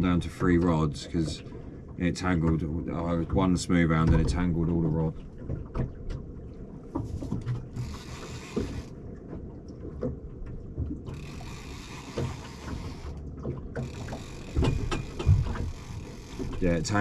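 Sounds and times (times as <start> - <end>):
knocks and clicks in a boat: 0.0 - 17.0
steady low rumble: 16.4 - 17.0.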